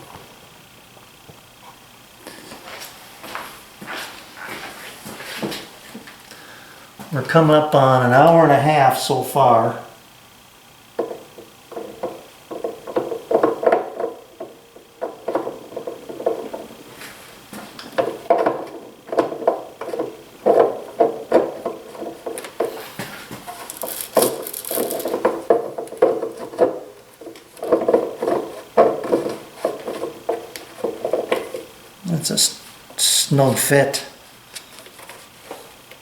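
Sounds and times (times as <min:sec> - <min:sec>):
metal parts clinking: 0:23.5 - 0:25.2.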